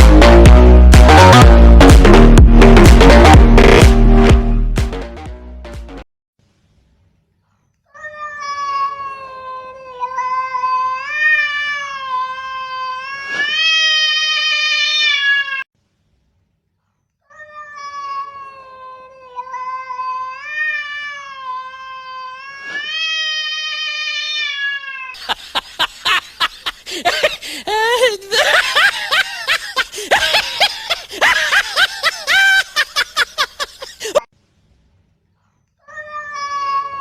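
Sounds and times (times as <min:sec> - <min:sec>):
cat yowling: 0:35.8 - 0:37.0.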